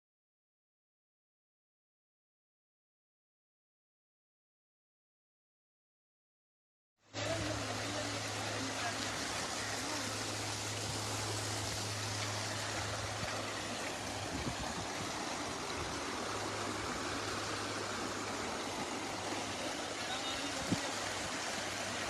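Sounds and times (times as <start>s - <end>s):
floodwater rushing: 7.1s - 22.0s.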